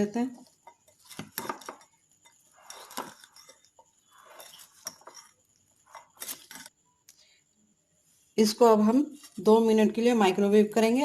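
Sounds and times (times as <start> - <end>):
spoon scraping in bowl: 0.5 - 6.7.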